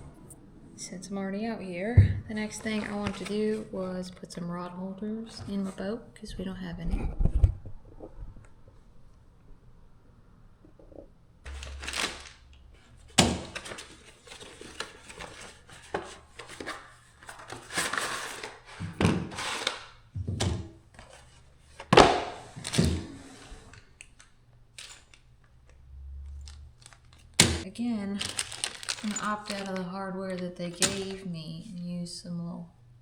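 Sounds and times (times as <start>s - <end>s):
rustling: 26.3s - 31.8s.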